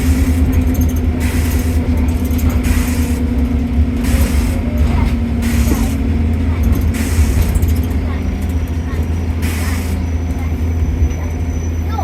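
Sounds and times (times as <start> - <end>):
steady hum: 0.0 - 10.0
bus engine and road rumble: 0.0 - 12.0
hiss: 1.2 - 1.8, 2.6 - 3.2, 4.0 - 4.6, 5.4 - 6.0, 7.0 - 7.7, 9.4 - 10.0.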